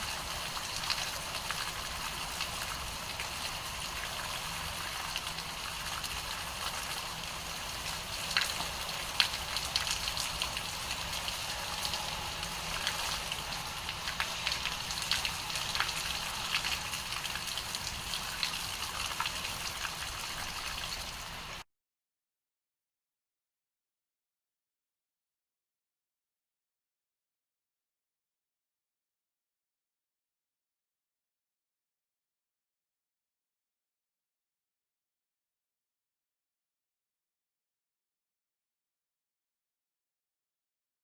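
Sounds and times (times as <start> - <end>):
rain pattering on a surface: 0.0 - 21.6.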